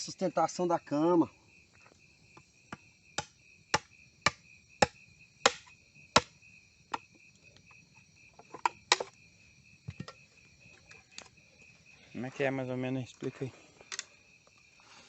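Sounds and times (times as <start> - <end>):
insects droning: 0.0 - 15.0
blade chopping wood: 2.7 - 7.1, 8.6 - 9.1.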